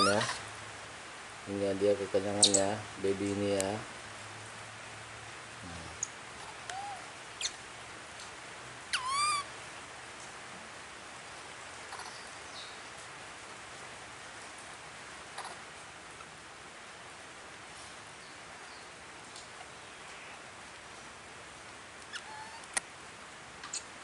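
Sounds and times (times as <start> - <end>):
baby monkey chirping and cooing: 0.0 - 0.5, 2.3 - 2.8, 5.7 - 7.6, 8.9 - 9.5, 11.8 - 12.8, 15.4 - 15.6, 22.0 - 22.8, 23.7 - 24.0.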